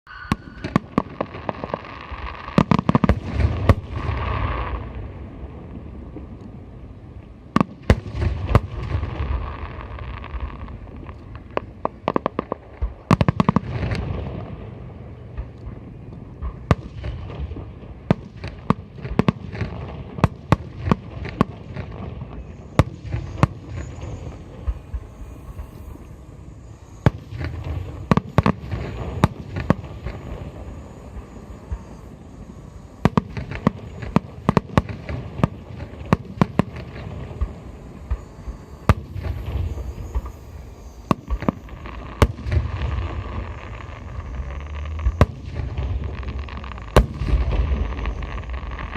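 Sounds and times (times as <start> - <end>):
continuous low rumble: 0.1 - 48.9
firework shells bursting: 20.2 - 48.9.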